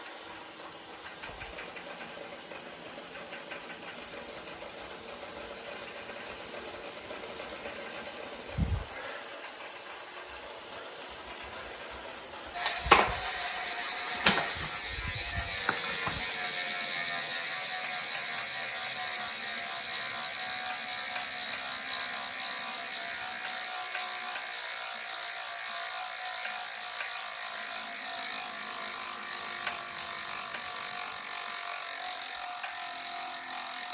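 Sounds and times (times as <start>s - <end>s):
bike trainer whirring: 0.0s - 33.9s.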